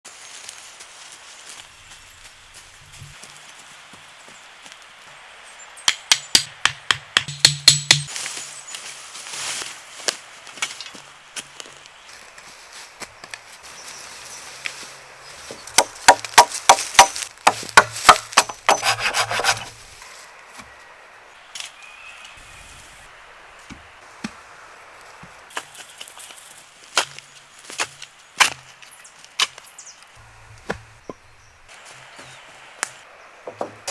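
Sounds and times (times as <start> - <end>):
wooden knocks and scrapes: 15.5 - 19.8.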